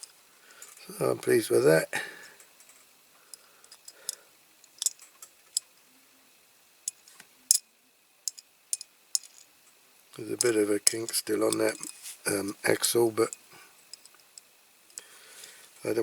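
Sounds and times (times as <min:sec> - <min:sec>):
metal model car clicks and taps: 0:02.6 - 0:05.7, 0:06.9 - 0:07.6, 0:08.2 - 0:09.5, 0:10.4 - 0:12.0, 0:13.3 - 0:15.1.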